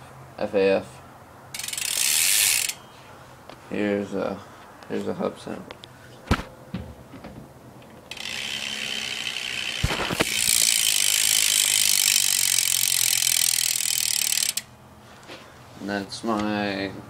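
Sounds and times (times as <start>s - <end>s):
bike hub ratcheting clicks: 1.5s - 2.8s, 8.1s - 14.7s
knock on bike wheel: 6.3s - 7.5s.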